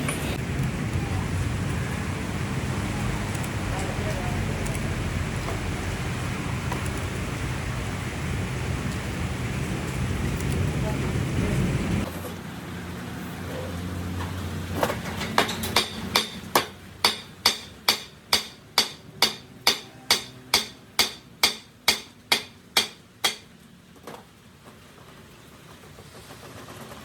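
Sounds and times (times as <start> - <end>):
hammer striking metal: 15.2 - 23.5.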